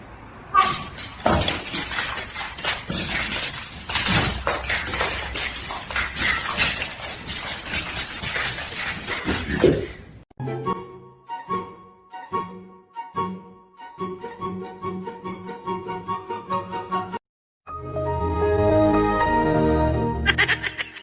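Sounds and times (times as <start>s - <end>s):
hard objects clattering: 0.6s - 10.2s.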